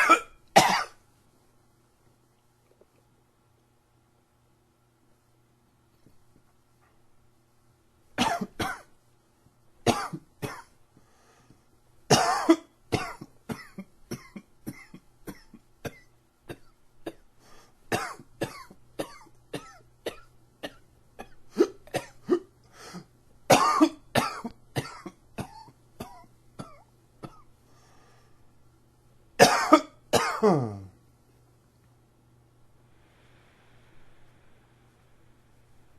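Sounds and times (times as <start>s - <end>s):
man coughing: 0.0s - 1.0s, 8.2s - 8.9s, 9.9s - 10.7s, 12.1s - 17.2s, 17.9s - 22.5s, 23.5s - 27.5s, 29.4s - 31.0s.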